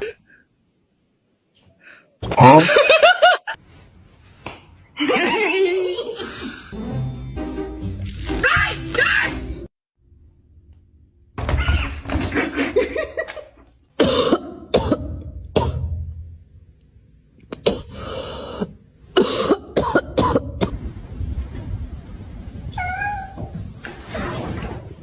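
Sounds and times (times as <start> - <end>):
person coughing: 14.0 - 15.9, 17.5 - 20.7.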